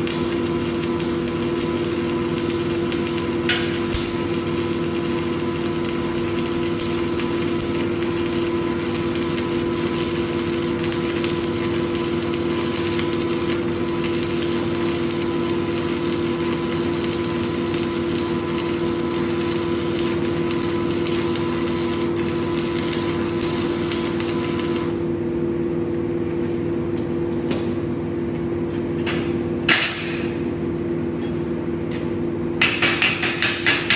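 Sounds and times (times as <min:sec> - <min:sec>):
welding arc crackling: 0:00.0 - 0:25.0
welding machine electrical hum: 0:00.0 - 0:33.9.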